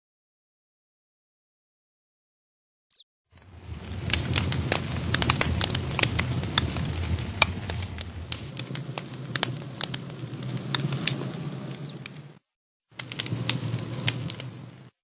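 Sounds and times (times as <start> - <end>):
low rumble of flames: 3.3 - 15.0
campfire crackling and popping: 3.4 - 14.9
brief high squeaks: 5.5 - 5.8, 8.3 - 8.6, 11.7 - 12.0.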